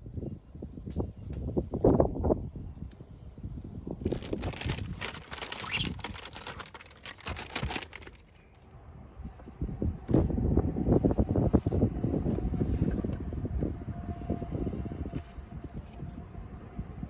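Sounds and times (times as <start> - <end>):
plastic crinkling: 4.0 - 8.6.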